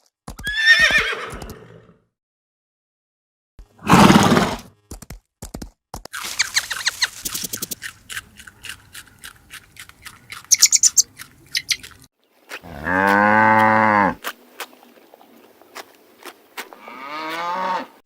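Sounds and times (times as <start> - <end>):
cow mooing: 12.6 - 14.2, 16.8 - 18.0.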